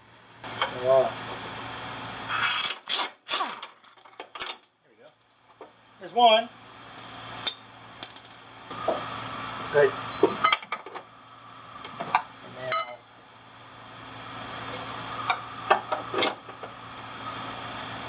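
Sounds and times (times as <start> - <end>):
metal tools clinking: 10.1 - 10.7, 12.7 - 13.0.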